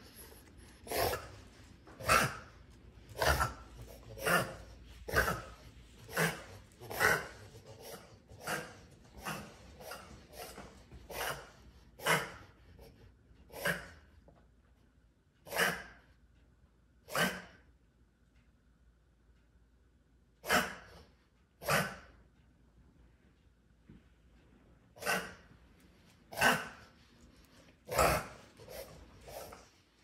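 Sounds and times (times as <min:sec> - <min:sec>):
dog coughing: 0:00.1 - 0:12.5, 0:13.5 - 0:14.0, 0:15.4 - 0:16.0, 0:17.1 - 0:17.6, 0:20.4 - 0:22.2, 0:25.0 - 0:25.5, 0:26.3 - 0:26.9, 0:27.9 - 0:29.7.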